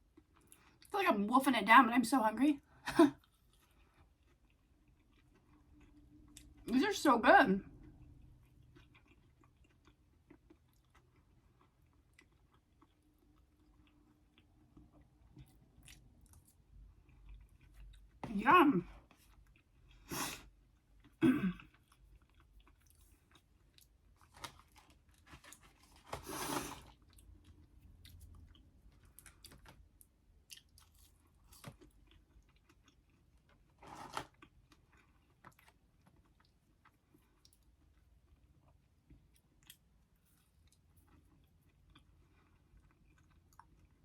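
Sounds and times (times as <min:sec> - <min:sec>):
chewing fried food: 0:00.0 - 0:00.9, 0:02.6 - 0:06.7, 0:07.6 - 0:18.2, 0:18.9 - 0:44.0.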